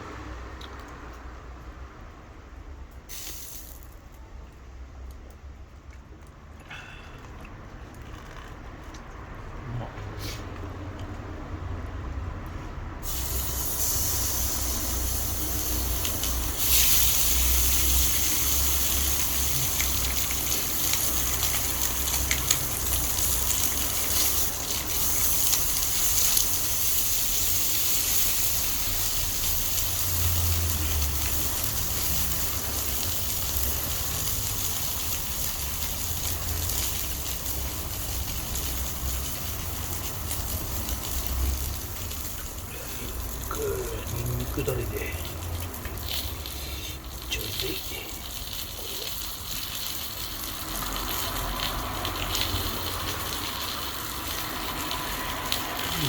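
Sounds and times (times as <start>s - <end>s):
meat sizzling in a frying pan: 3.1s - 3.9s, 13.0s - 56.0s.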